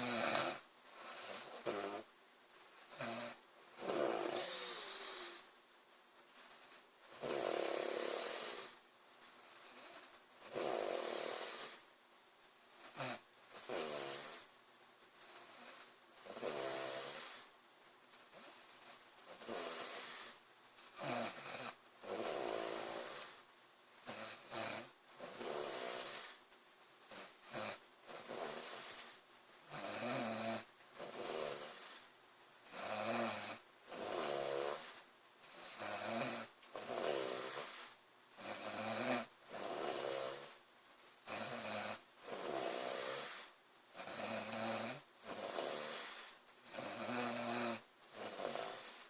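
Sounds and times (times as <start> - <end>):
girl snoring loudly: 0.0 - 2.1, 2.9 - 5.4, 7.2 - 8.8, 9.7 - 11.8, 13.0 - 14.5, 16.3 - 17.5, 19.3 - 20.4, 21.0 - 23.4, 24.1 - 26.4, 27.1 - 32.0, 32.7 - 35.0, 35.6 - 40.6, 41.3 - 49.0.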